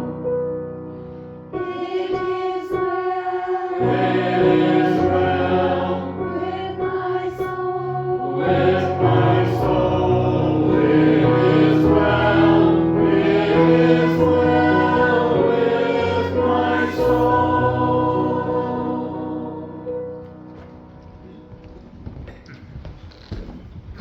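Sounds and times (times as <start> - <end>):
group singing a hymn: 1.5 - 20.5.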